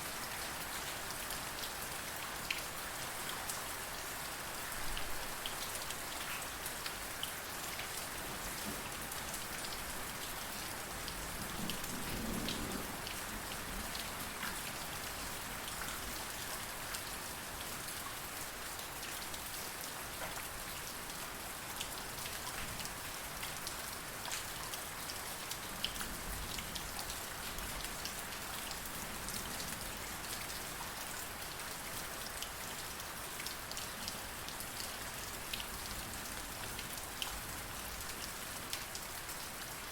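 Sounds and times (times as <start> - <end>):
rain on hard surfaces: 0.0 - 39.9.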